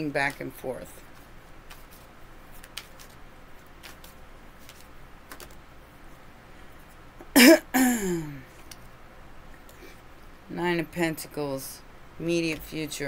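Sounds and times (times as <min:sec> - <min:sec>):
person coughing: 0:07.3 - 0:08.4.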